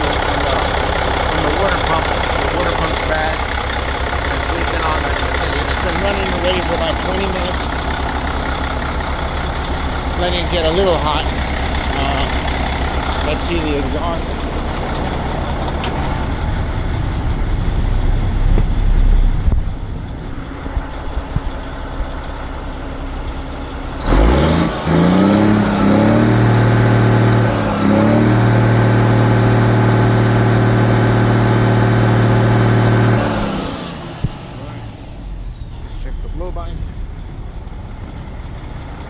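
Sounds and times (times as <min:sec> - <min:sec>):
diesel engine revving: 0:00.0 - 0:39.0
high turbo whine: 0:00.0 - 0:39.0.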